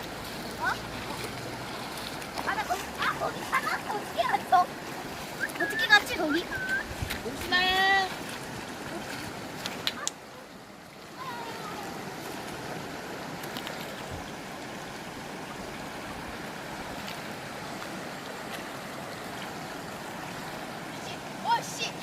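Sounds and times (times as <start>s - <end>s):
stream water flowing over rocks: 0.0s - 22.0s.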